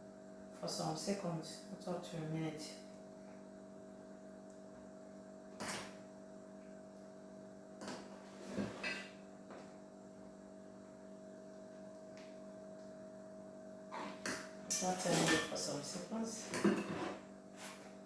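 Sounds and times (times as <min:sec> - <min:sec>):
steady electrical hum: 0:00.0 - 0:18.0
spoon scraping a pot: 0:13.9 - 0:15.6, 0:16.6 - 0:17.3.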